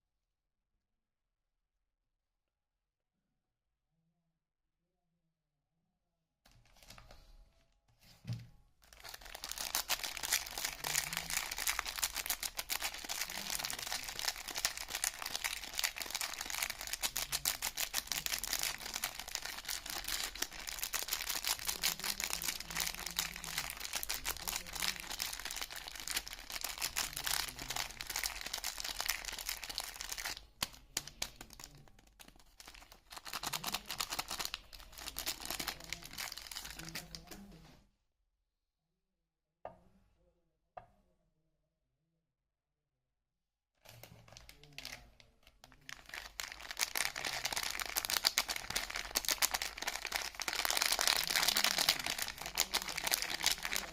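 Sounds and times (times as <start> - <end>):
wrapper tearing and crinkling: 8.8 - 37.4, 45.6 - 53.9.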